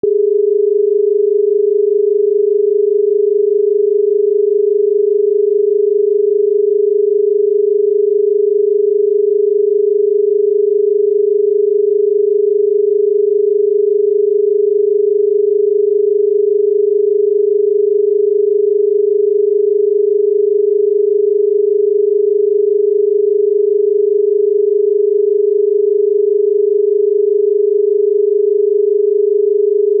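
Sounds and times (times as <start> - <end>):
telephone dial tone: 0.0 - 19.2.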